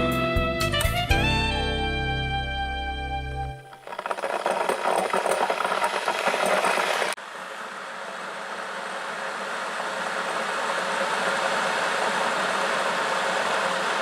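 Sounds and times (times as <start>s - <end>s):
steam hissing: 3.8s - 14.0s.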